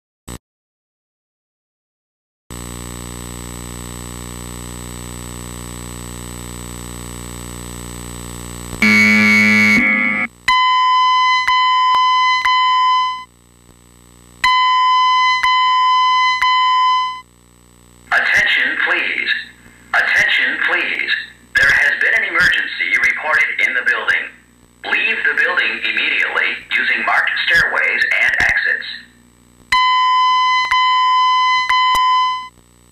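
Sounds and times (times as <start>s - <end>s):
electrical hum: 2.6s - 32.9s
electronic alert tones: 8.8s - 13.2s.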